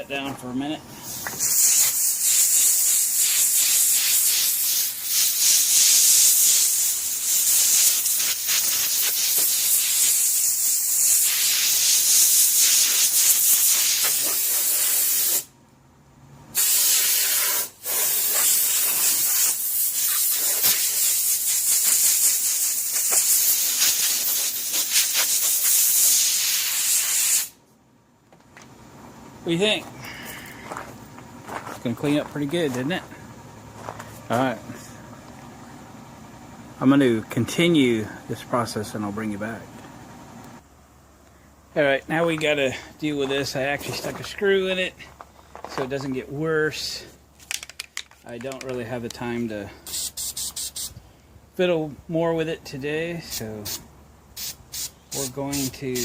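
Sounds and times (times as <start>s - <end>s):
compressed air gun hissing: 1.0s - 15.5s, 16.6s - 27.6s, 49.8s - 51.0s, 54.4s - 56.0s.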